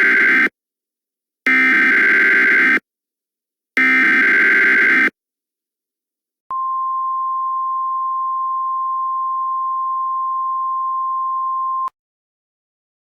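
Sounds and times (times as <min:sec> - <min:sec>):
steady emergency alert tone: 0:00.0 - 0:00.5.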